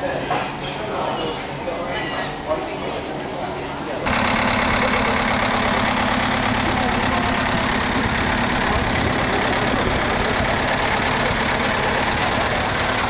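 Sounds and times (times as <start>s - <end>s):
tractor diesel engines running: 4.1s - 13.0s.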